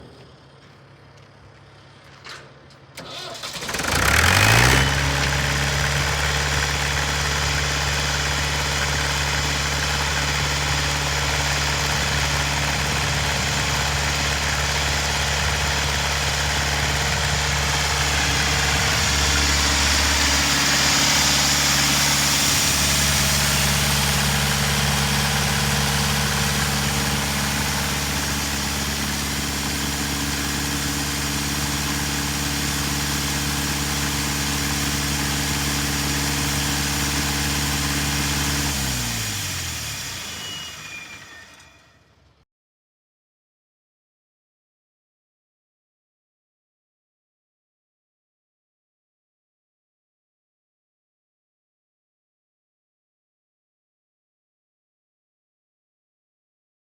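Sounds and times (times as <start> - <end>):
compressor engine cranking and idling: 1.8 - 41.8.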